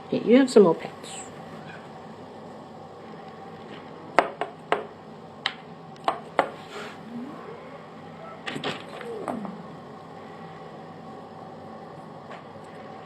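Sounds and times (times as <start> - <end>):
short gliding whines: 6.7 - 10.2.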